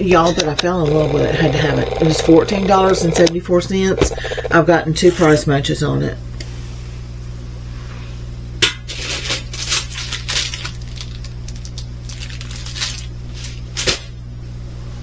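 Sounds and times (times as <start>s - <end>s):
plastic packaging crackling: 9.5s - 13.1s.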